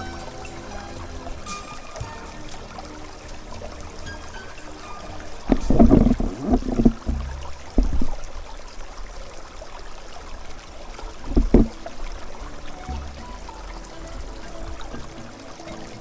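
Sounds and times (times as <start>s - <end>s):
water splashing and trickling: 0.0s - 16.0s
loud low thumps: 5.5s - 8.4s.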